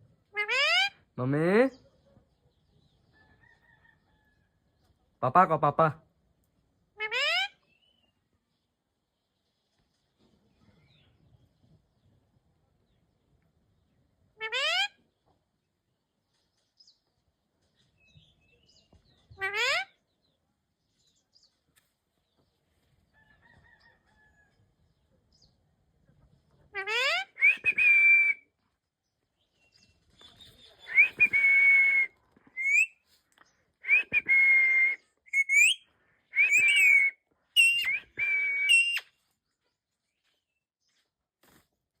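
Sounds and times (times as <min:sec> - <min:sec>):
parrot whistling calls: 0:30.9 - 0:32.9, 0:33.9 - 0:35.8, 0:36.4 - 0:39.1.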